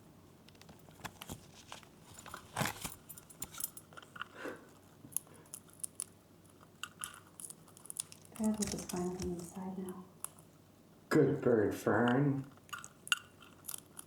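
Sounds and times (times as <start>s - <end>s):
bird claws and beaks tapping: 5.1s - 10.5s.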